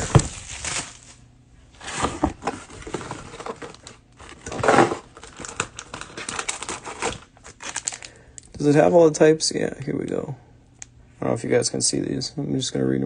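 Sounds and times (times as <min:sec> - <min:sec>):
cellophane crinkling and tearing: 0:00.0 - 0:01.2, 0:01.8 - 0:08.2.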